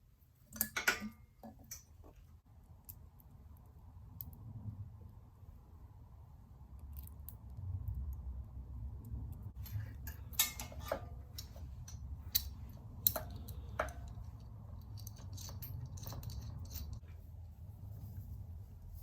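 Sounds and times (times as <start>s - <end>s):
low steady hum: 0.0s - 19.0s
small tools clicking and tapping: 0.5s - 2.1s, 9.3s - 17.0s.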